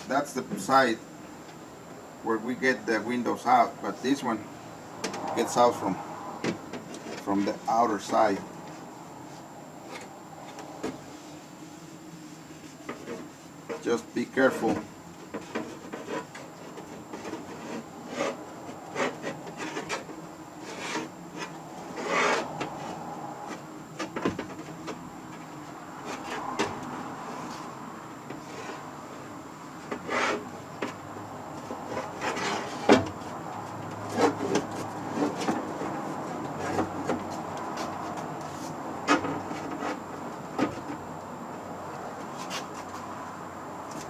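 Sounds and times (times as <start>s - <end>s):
glass scraping against car door: 15.4s - 23.0s, 29.9s - 30.5s, 31.9s - 33.0s.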